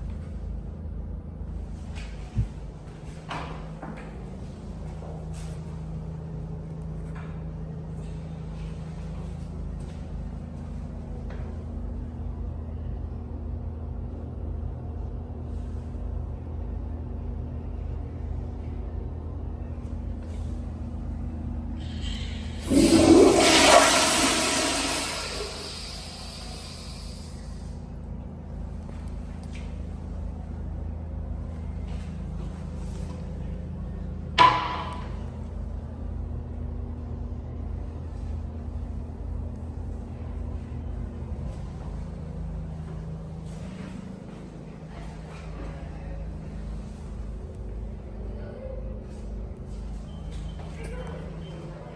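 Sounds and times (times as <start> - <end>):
low hum: 0.0 - 50.6
toilet flushing: 21.8 - 27.7.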